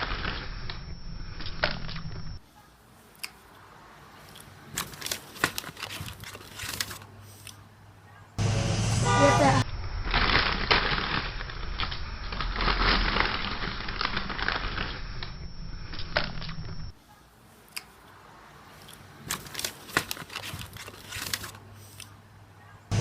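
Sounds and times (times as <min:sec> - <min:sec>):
dense crackling and crunching: 0:00.0 - 0:02.4, 0:09.6 - 0:17.0, 0:18.8 - 0:21.7.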